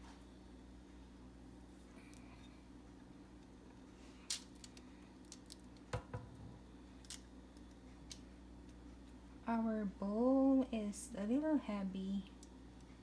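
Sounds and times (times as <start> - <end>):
utensil tapping bowl and pan: 5.9 - 6.5.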